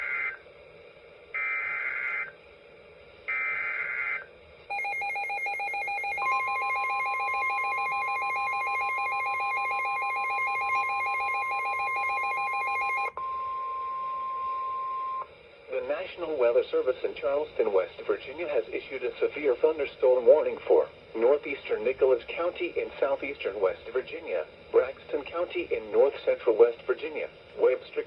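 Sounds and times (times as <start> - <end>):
screechy data bursts: 0.0 - 0.4, 1.4 - 2.4, 3.3 - 4.3
steady alarm tone: 1.3 - 2.3, 3.3 - 15.3.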